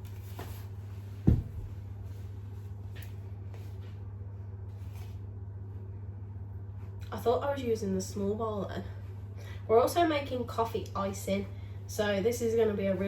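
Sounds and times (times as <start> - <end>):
faint scraping and shuffling: 0.0 - 7.0
steady low hum: 0.0 - 13.0
dull thump: 1.2 - 1.7.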